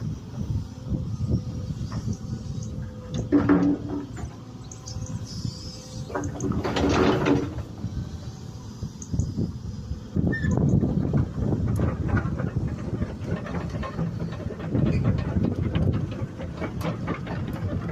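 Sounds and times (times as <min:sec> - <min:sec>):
digger engine running: 0:00.0 - 0:17.9
knocks and scrapes: 0:03.1 - 0:04.4, 0:06.0 - 0:07.7.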